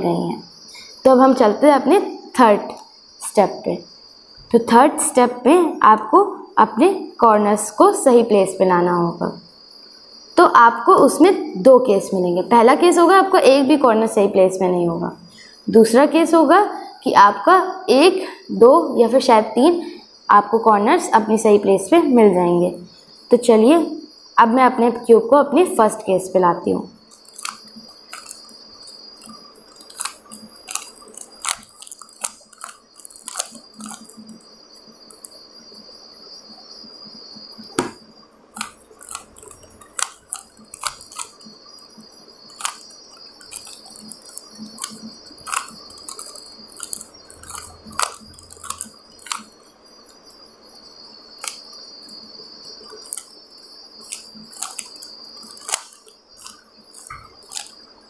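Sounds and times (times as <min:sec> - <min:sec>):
puzzle cube layers clicking: 0:27.1 - 0:34.4, 0:35.1 - 0:35.3, 0:37.7 - 0:38.0, 0:38.6 - 0:41.6, 0:42.5 - 0:49.6, 0:51.4 - 0:51.7, 0:52.8 - 0:53.3, 0:54.0 - 0:57.8.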